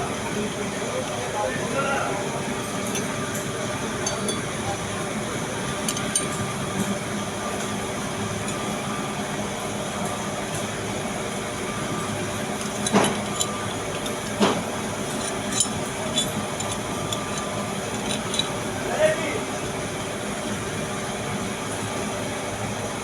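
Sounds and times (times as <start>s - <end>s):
steady background hum: 0.0s - 23.0s
metallic clinks: 12.6s - 14.5s, 15.1s - 18.6s.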